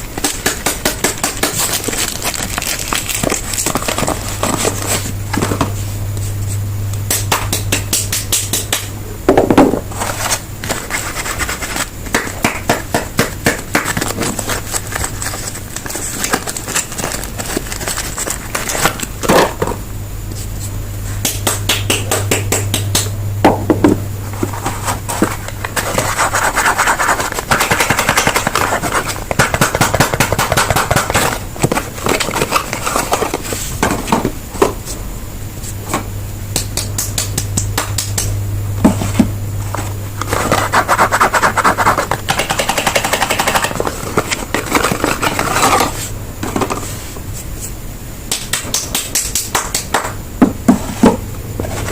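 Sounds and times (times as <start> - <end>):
packaging crinkling: 0.0 - 5.6, 13.8 - 19.1
low steady hum: 0.0 - 51.9
sharp taps and clicks: 21.2 - 23.1.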